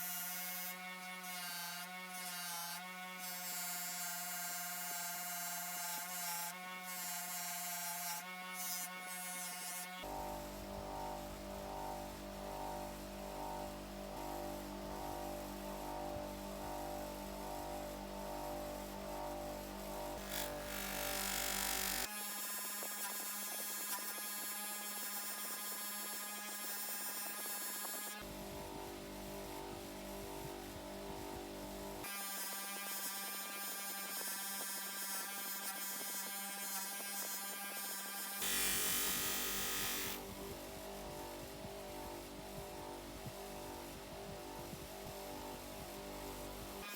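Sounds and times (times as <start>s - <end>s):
polishing machine motor buzzing: 20.2s - 28.3s, 38.4s - 40.4s
rotary polishing tool whine: 32.2s - 40.3s.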